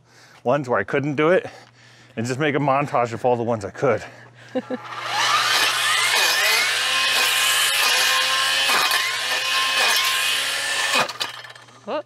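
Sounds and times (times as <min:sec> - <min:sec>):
power tool motor whining: 0:04.6 - 0:11.9.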